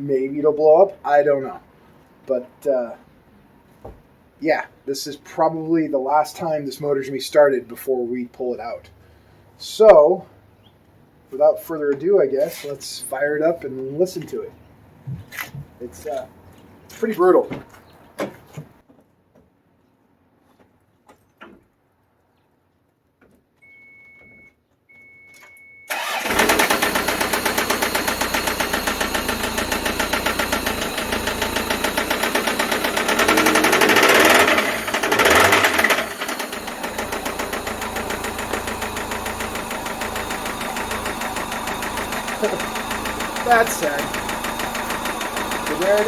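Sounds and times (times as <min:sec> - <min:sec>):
short beeps: 0:23.6 - 0:25.9
engine running with loud knock: 0:25.9 - 0:46.0.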